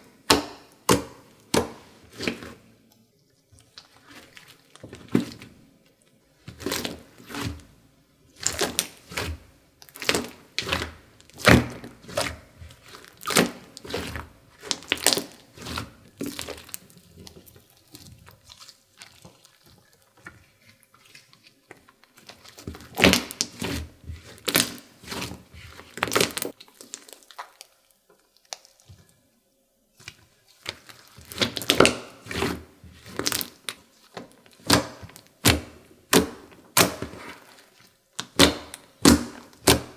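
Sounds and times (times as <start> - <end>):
slime crackling and popping: 8.3 - 20.1, 21.2 - 27.8, 30.6 - 39.9.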